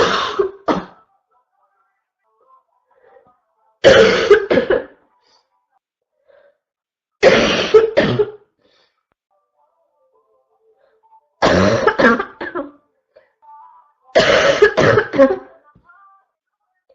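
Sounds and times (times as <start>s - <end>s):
person coughing harshly: 0.0s - 1.0s, 3.8s - 5.0s, 7.2s - 8.5s, 11.4s - 12.8s, 14.2s - 15.5s.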